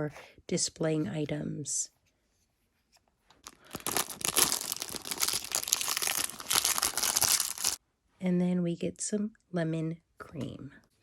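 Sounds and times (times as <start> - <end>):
plastic packaging crinkling and tearing: 3.4 - 7.8.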